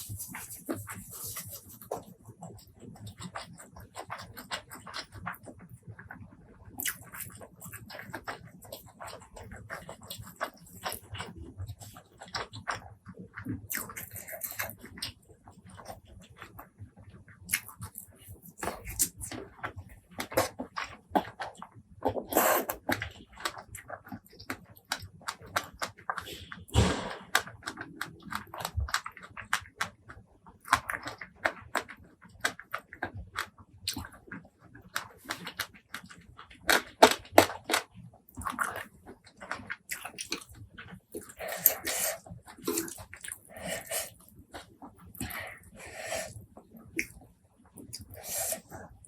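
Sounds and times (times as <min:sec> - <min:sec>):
crunchy bites and wet chewing: 0:17.4 - 0:47.2.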